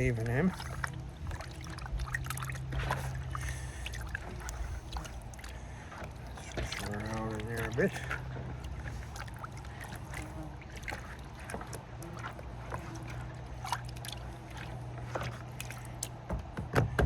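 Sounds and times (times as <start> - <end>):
steady low hum: 0.0 - 17.0
water sloshing in a bucket: 0.0 - 17.0
small knocks: 10.0 - 17.0.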